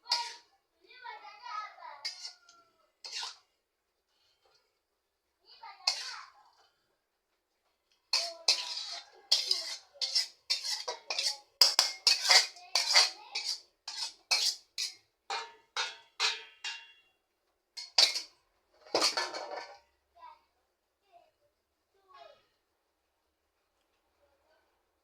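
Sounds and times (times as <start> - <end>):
metal utensil scraping cookware: 0.0 - 0.5, 2.0 - 3.5, 5.8 - 6.4, 8.1 - 17.1, 17.8 - 19.8.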